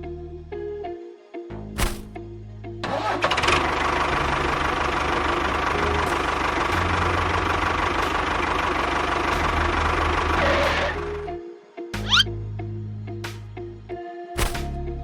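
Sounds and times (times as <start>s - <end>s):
background music: 0.0s - 15.0s
small engine idling: 2.9s - 11.3s.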